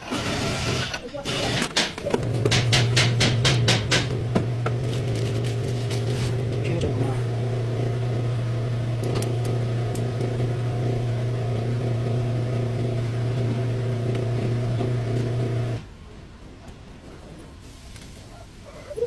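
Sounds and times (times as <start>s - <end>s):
car engine running: 2.2s - 15.8s.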